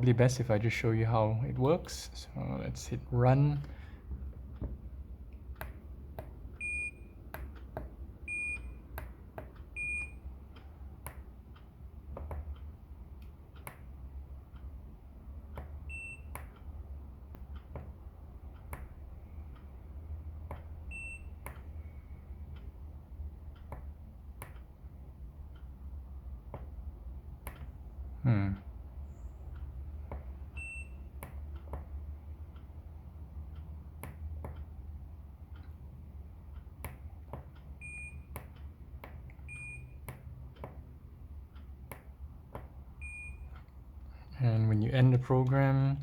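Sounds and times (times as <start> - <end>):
low steady hum: 0.0 - 46.0
electronic morse code beeps: 6.6 - 7.2, 8.3 - 8.8, 9.8 - 10.2, 15.9 - 16.4, 30.6 - 31.1, 37.8 - 38.3, 39.5 - 40.1, 43.0 - 43.6.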